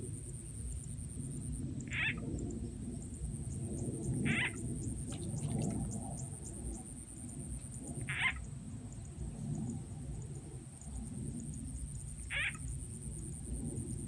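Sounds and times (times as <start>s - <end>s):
frog calls: 1.8s - 2.6s, 3.6s - 6.9s, 7.5s - 9.1s, 10.8s - 13.2s.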